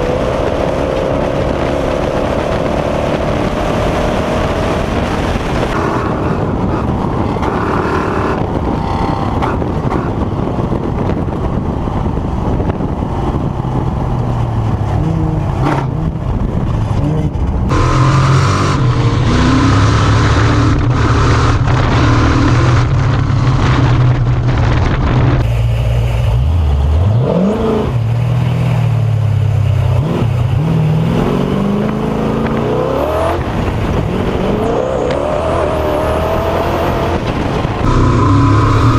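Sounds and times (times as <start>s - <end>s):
wind rushing: 0.0s - 25.6s, 30.0s - 38.9s
race vehicle engine running hard: 0.0s - 38.9s
rough ground noise: 13.1s - 29.2s.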